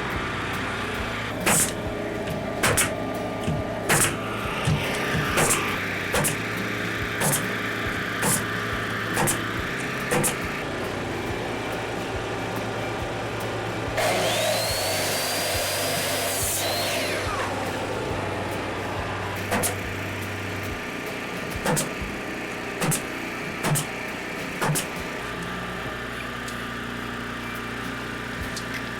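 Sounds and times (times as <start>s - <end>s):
steady low hum: 0.0s - 14.0s, 17.0s - 26.6s
power tool whining: 0.0s - 28.9s
sharp knocks: 1.4s - 6.5s, 7.2s - 7.5s, 9.2s - 9.5s, 10.1s - 10.5s, 21.6s - 22.0s, 22.8s - 23.9s, 24.6s - 25.0s.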